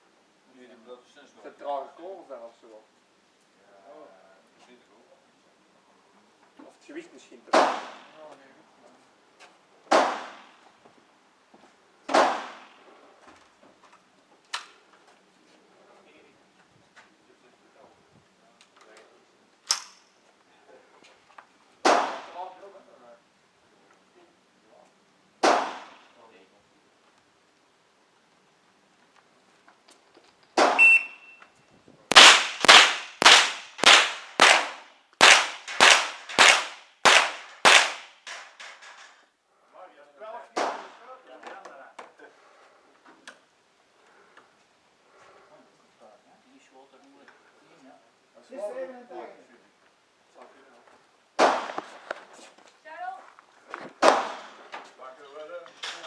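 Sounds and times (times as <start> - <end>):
rifle shots: 9.9 - 10.6, 25.4 - 26.1, 32.1 - 38.5, 54.0 - 54.6.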